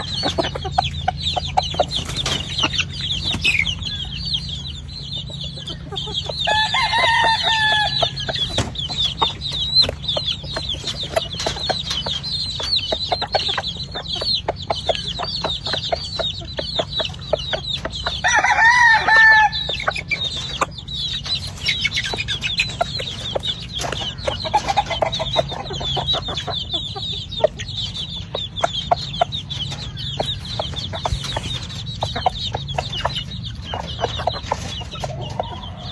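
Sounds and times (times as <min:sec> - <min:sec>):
chickens clucking and chirping: 0:00.0 - 0:35.9
rooster crowing: 0:06.4 - 0:08.2, 0:18.2 - 0:19.7.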